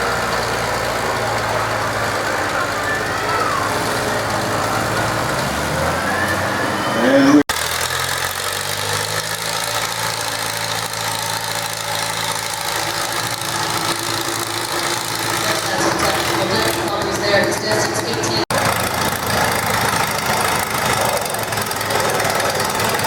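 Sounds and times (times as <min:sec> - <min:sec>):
tractor engine running under load: 0:00.0 - 0:23.0.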